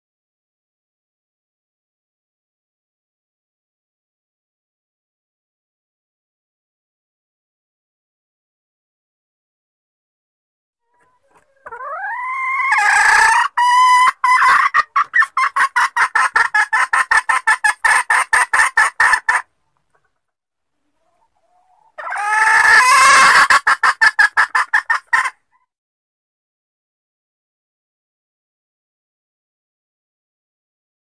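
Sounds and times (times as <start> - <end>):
junglefowl hen clucking: 10.9 - 20.2, 20.8 - 25.7.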